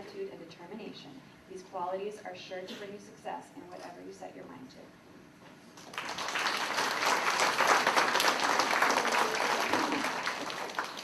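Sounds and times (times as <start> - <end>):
audience clapping: 5.8 - 11.0.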